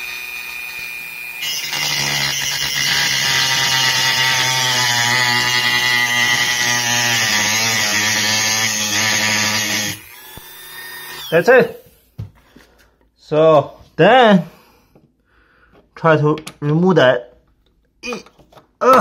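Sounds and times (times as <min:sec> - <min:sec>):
rotary tool grinding metal: 0:00.0 - 0:11.4.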